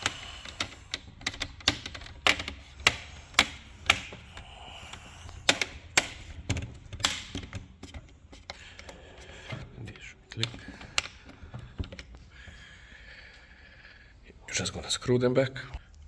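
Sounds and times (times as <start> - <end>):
plastic clips snapping into place: 0.0 - 9.7.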